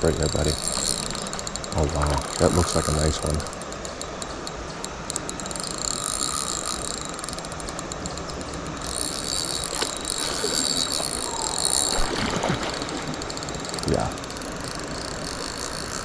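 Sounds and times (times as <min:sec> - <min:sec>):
fishing reel ratchet clicking: 0:00.0 - 0:16.0
river water rushing: 0:09.8 - 0:14.2.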